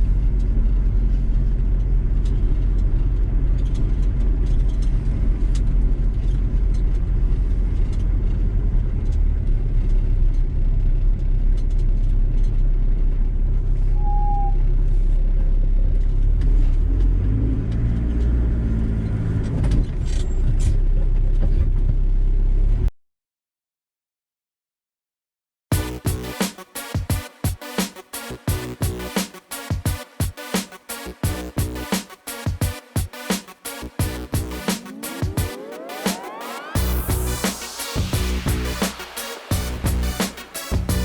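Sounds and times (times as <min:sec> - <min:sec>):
vehicle engine and road rumble: 0:00.0 - 0:22.9.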